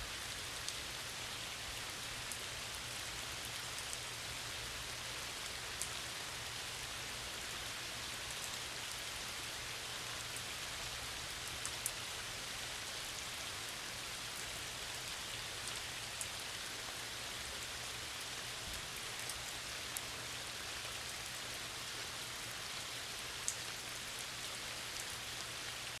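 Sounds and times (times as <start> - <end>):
rain falling on lake: 0.0 - 26.0.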